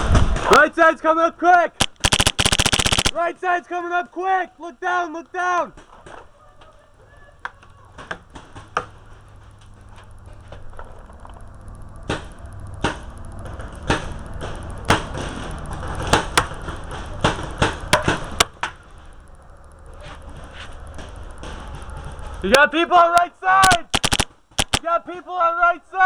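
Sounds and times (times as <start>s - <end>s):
paintball marker shots: 1.8s - 3.2s, 23.6s - 24.9s.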